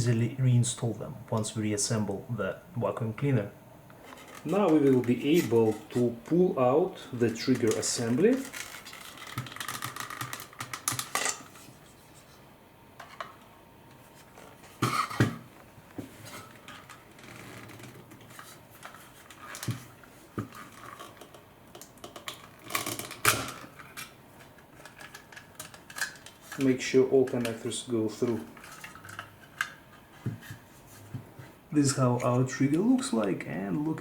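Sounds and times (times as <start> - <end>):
plastic clicks and rattles: 7.6 - 11.6, 20.5 - 27.6, 28.3 - 29.8.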